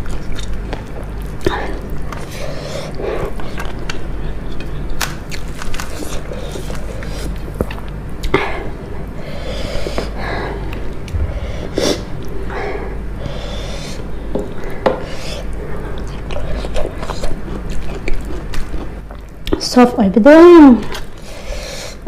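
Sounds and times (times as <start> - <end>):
crunching and chewing crispy food: 0.0 - 8.3, 15.4 - 19.6, 20.8 - 22.0
loud nasal breaths: 8.5 - 15.5, 21.2 - 22.0.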